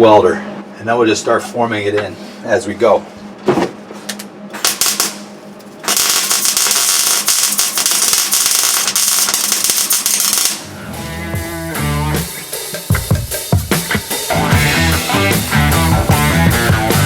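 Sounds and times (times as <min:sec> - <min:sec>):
welder arc crackling: 0:04.6 - 0:16.0
background music with drums: 0:10.9 - 0:17.0.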